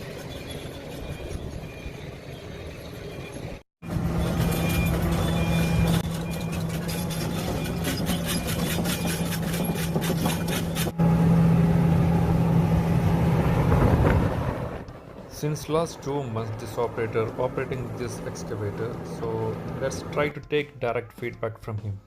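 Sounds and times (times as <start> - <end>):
excavator engine running: 0.0 - 20.4
rapid clatter: 4.2 - 11.0.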